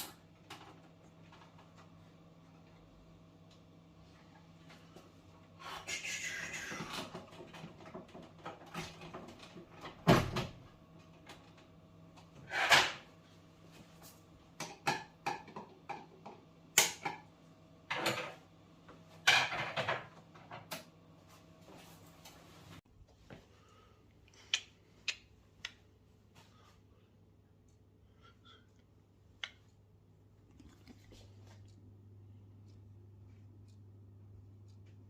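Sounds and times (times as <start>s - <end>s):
faint low hum: 20.3s - 35.0s.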